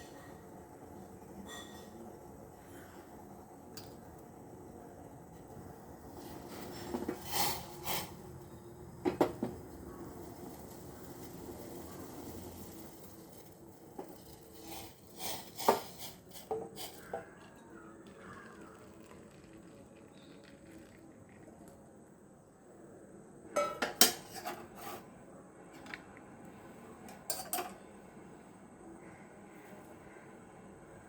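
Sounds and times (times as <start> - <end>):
metal utensils and pots clattering: 1.4 - 2.0, 6.2 - 8.2, 13.4 - 17.4, 23.6 - 25.0, 27.2 - 27.8.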